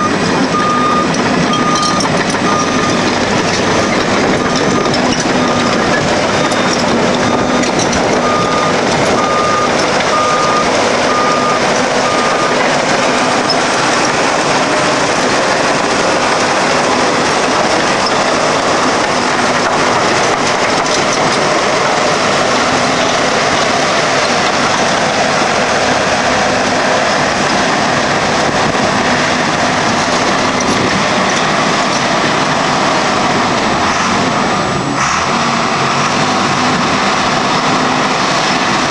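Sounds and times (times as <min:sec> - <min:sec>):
backup alarm beeping: 0:00.0 - 0:03.1, 0:03.8 - 0:12.6
crawler dozer running: 0:00.0 - 0:38.9.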